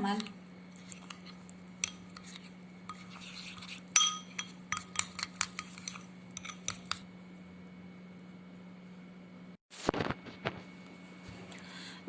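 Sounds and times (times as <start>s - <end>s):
spoon clinking against bowl: 3.9s - 7.0s.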